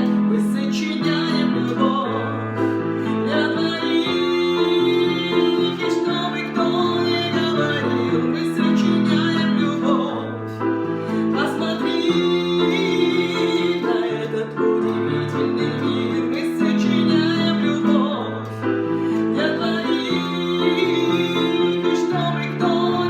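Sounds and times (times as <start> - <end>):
keyboard accompaniment: 0.0 - 23.0
person singing: 0.0 - 23.0.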